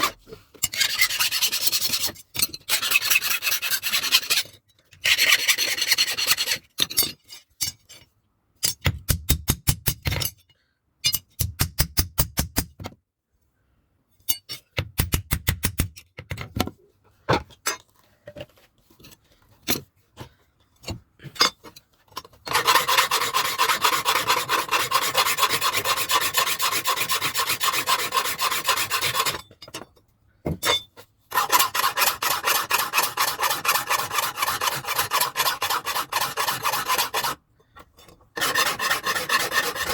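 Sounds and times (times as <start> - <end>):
file rasping on steel blade: 0.0 - 6.8, 22.5 - 29.5, 31.3 - 37.4, 38.4 - 39.9.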